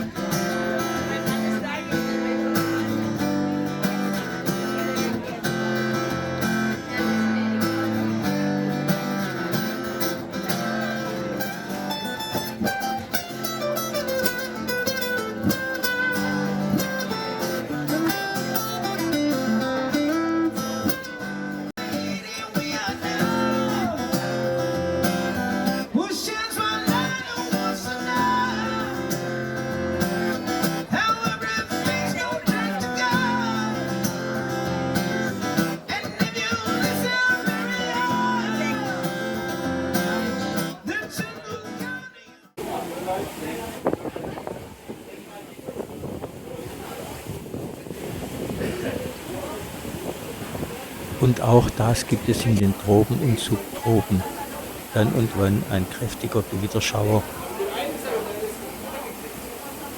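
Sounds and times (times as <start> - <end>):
acoustic guitar music: 0.0 - 44.5, 46.0 - 59.9
person singing: 21.8 - 24.2.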